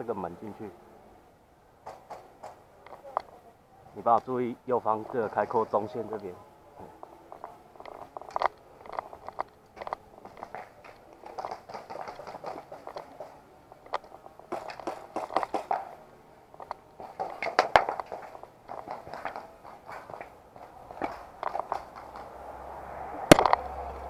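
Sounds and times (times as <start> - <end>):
footsteps crunching on gritty ground: 16.9 - 22.3.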